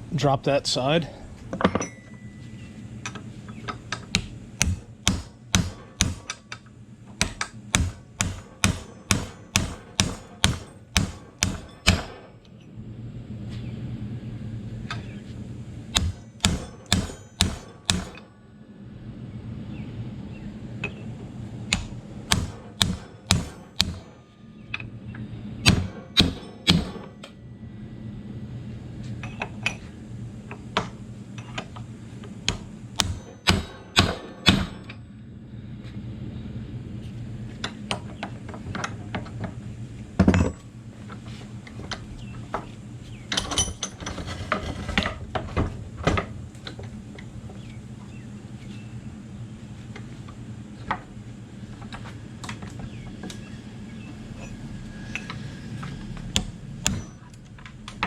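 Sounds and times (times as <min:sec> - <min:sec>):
low hum: 0:00.0 - 0:43.4, 0:44.2 - 0:58.0
hammer striking metal: 0:04.0 - 0:12.5, 0:15.9 - 0:18.4, 0:21.7 - 0:24.9, 0:25.6 - 0:27.4, 0:32.5 - 0:35.0, 0:56.4 - 0:57.3.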